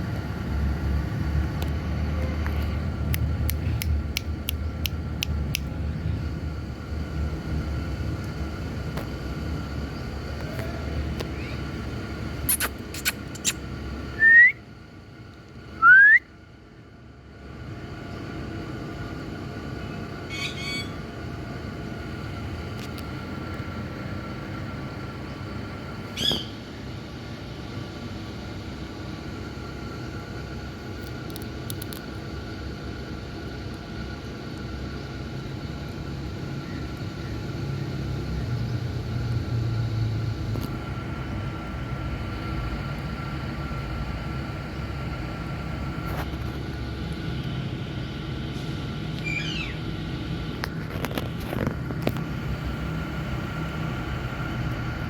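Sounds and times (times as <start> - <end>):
low background rumble: 0.0 - 55.0
parakeet whistles: 20.3 - 21.0, 49.2 - 49.8.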